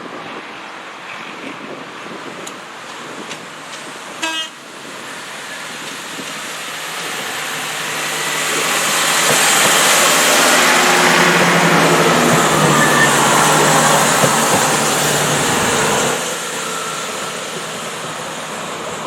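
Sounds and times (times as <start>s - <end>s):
train passing: 2.0s - 19.0s
train horn toot: 4.2s - 4.6s.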